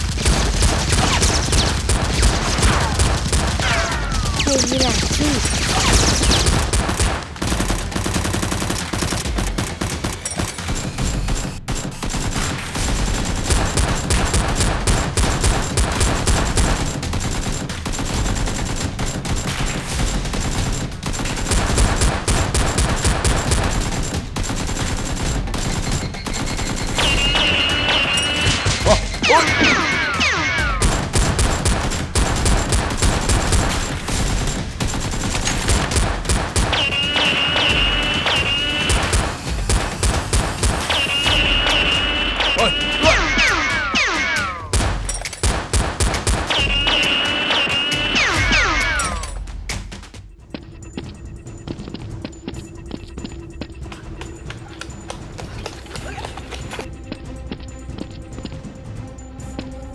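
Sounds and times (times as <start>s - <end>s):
automatic gunfire: 0.0s - 49.4s.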